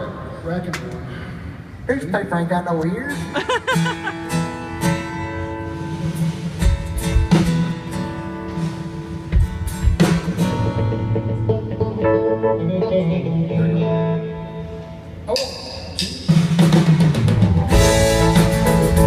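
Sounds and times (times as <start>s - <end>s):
acoustic guitar strumming: 3.7s - 14.6s, 17.6s - 19.0s
drum hits: 9.3s - 10.6s, 16.0s - 19.0s.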